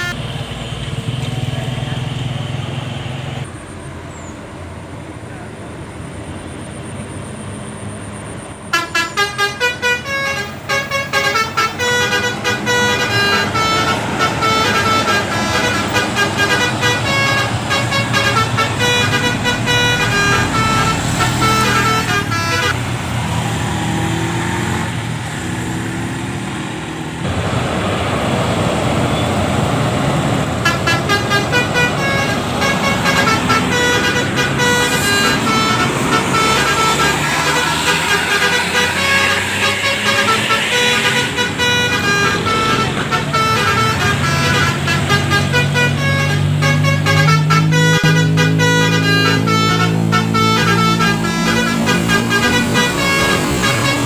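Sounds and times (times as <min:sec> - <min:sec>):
multi-tone bus horn tune: 0:00.0 - 0:00.2, 0:08.6 - 0:22.9, 0:29.0 - 0:29.5, 0:30.5 - 0:54.0
bus engine: 0:00.0 - 0:54.0
traffic noise: 0:00.0 - 0:54.0.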